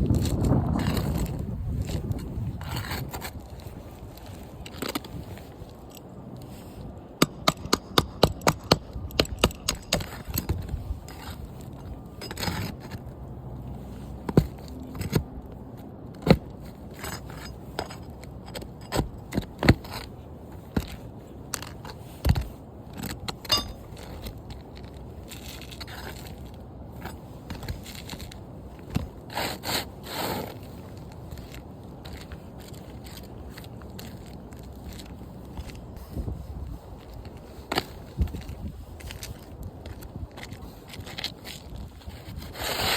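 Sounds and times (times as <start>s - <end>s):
tools scraping shingles: 0.0s - 6.1s, 7.2s - 13.1s, 16.2s - 36.2s, 37.1s - 42.9s
sharp taps on roof shingles: 17.8s - 20.1s.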